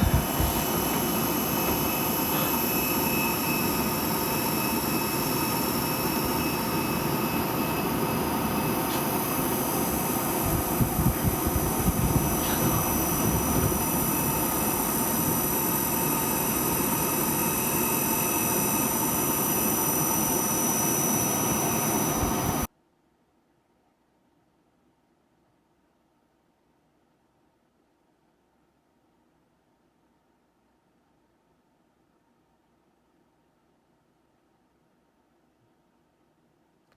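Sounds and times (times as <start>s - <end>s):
fan airflow hiss: 0.0s - 22.7s
high-pitched whine: 0.0s - 22.7s.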